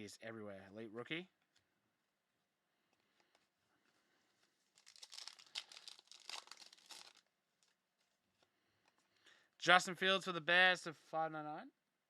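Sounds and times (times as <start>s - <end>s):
cards and packaging crinkling: 3.0s - 9.0s.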